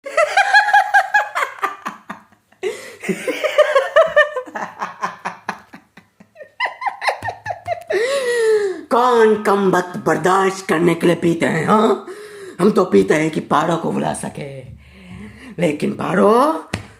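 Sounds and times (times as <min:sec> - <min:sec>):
person laughing: 0:00.1 - 0:08.7.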